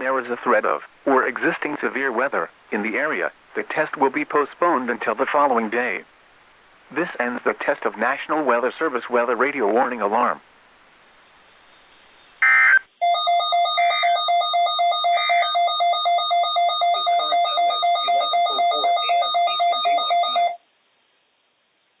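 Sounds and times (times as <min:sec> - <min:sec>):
brief data chirps: 0:12.4 - 0:20.6
rapid electronic alarm beeping: 0:12.4 - 0:20.6
screeching digital data burst: 0:13.7 - 0:20.5.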